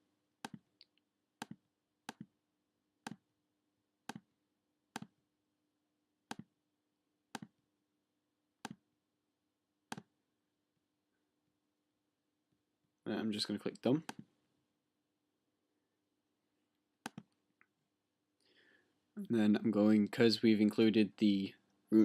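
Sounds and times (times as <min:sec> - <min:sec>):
computer mouse clicking: 0:00.4 - 0:02.3, 0:04.1 - 0:04.3, 0:04.9 - 0:05.2, 0:06.3 - 0:06.5, 0:07.3 - 0:07.6, 0:08.6 - 0:08.8, 0:09.9 - 0:10.1, 0:17.0 - 0:17.4.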